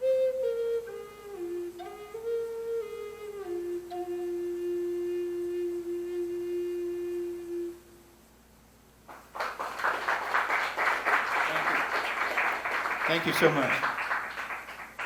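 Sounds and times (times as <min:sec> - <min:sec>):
flute long low note: 0:00.0 - 0:08.2
audience applauding: 0:09.1 - 0:15.0.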